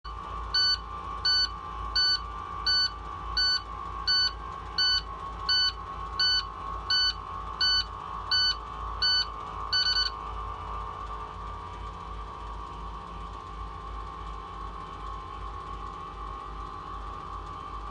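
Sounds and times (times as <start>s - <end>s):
steady high whine: 0.1s - 16.8s
dashboard warning beeps: 0.6s - 10.1s.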